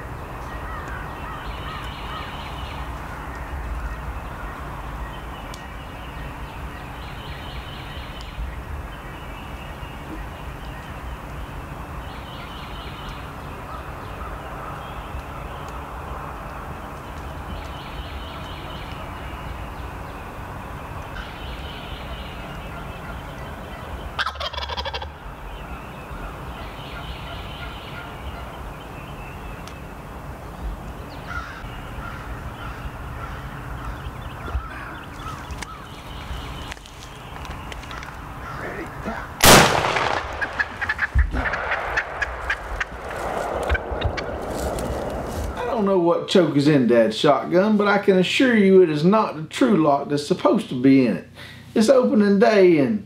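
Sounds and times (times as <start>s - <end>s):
turkey gobbling: 21.2s - 25.2s, 37.8s - 43.0s
shotgun blast: 39.4s - 44.8s
low rumble: 39.4s - 45.9s.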